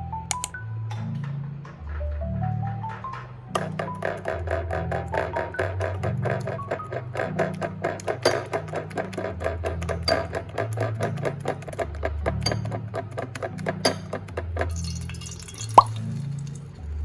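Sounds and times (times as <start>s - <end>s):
fast steady clicks: 3.5s - 15.9s.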